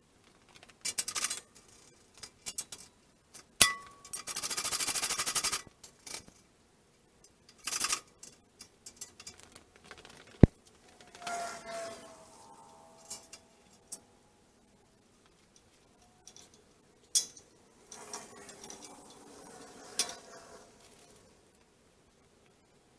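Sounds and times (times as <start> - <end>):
fast rattling clicks: 7.5 - 11.2.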